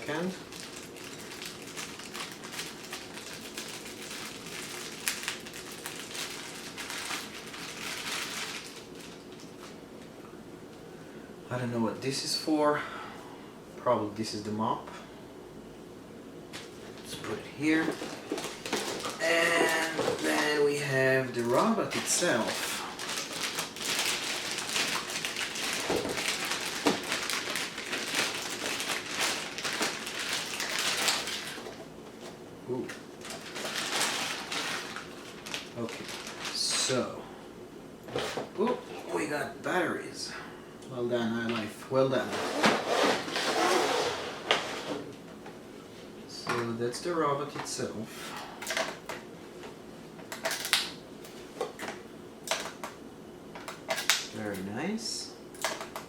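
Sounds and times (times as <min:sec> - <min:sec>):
plastic packaging crinkling: 0:00.0 - 0:09.8, 0:16.6 - 0:32.4, 0:33.0 - 0:37.0, 0:50.3 - 0:51.0, 0:53.6 - 0:54.6.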